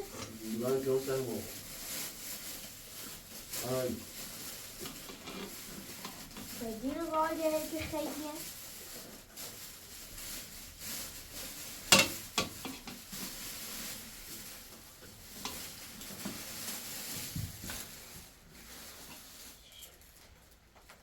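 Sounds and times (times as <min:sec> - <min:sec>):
food sizzling in oil: 0:11.7 - 0:14.0, 0:15.0 - 0:17.2.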